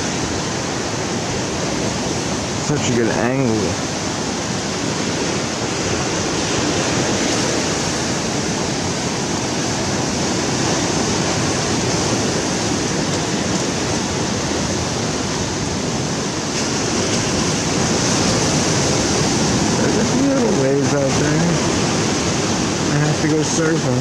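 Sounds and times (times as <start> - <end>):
ocean surf breaking: 0.0 - 24.0.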